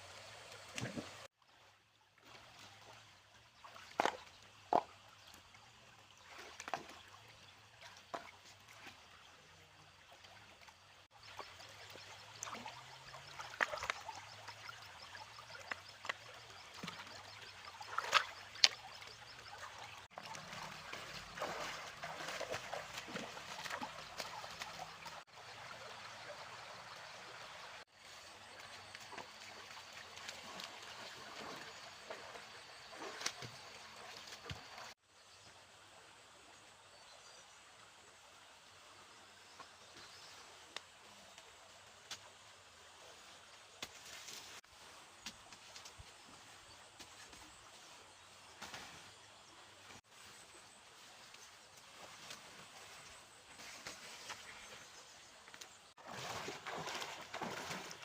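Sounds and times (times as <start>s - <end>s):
water trickling and sloshing: 0.0s - 58.0s
sharp water splashes: 11.2s - 25.4s, 56.0s - 58.0s.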